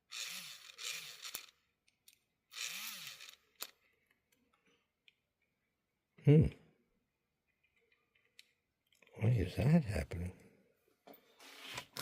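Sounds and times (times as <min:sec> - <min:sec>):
small electric motor whirring: 0:00.0 - 0:01.6, 0:02.5 - 0:03.8.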